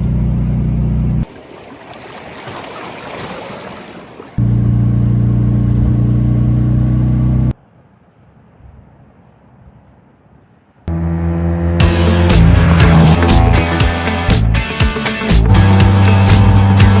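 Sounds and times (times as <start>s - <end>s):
small car engine running: 0.0s - 1.2s, 4.4s - 7.5s, 10.9s - 14.6s, 15.3s - 17.0s.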